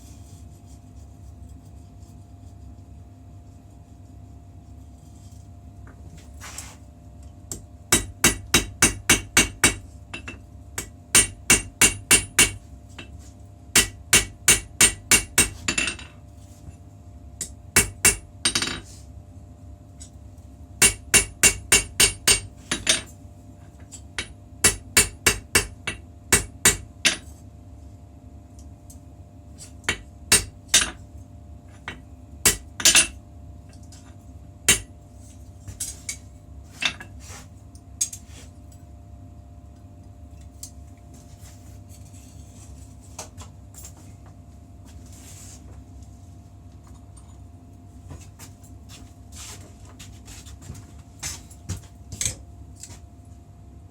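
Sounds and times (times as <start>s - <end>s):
hammer striking steel: 8.0s - 12.6s, 20.8s - 23.0s, 34.7s - 34.9s.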